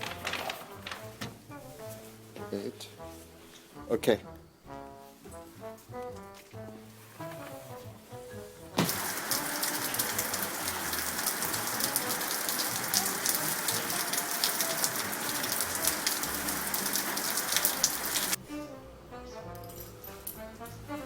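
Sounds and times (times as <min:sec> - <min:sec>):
heavy rain on hard surface: 0:08.8 - 0:18.4.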